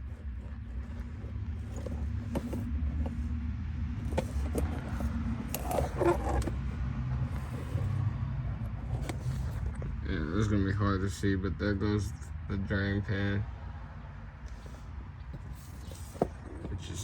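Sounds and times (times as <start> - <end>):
metal tools clinking and rattling: 4.1 - 6.6.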